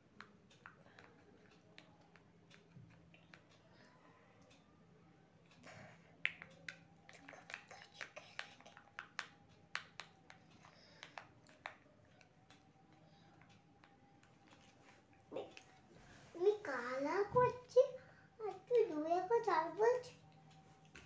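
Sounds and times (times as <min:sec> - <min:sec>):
small sharp clicks and taps: 0:00.0 - 0:04.7, 0:05.4 - 0:14.9.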